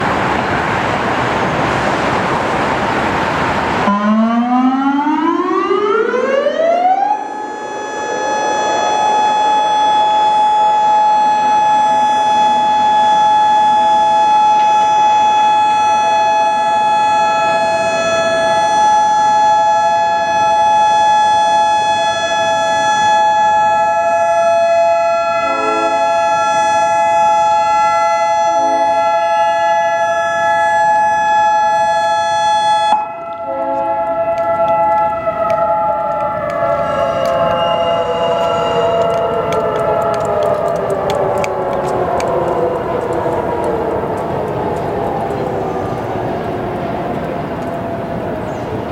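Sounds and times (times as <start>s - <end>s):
loud rushing noise: 0.0s - 3.9s, 7.2s - 10.7s
warning siren winding up: 3.9s - 45.3s.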